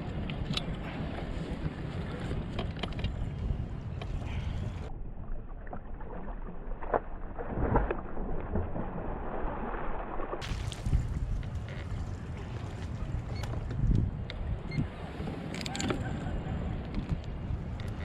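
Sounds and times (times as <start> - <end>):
wind buffeting microphone: 0.0 - 4.9, 10.4 - 18.0
water lapping against hull: 0.0 - 18.0
knocks and splashes: 5.4 - 13.9.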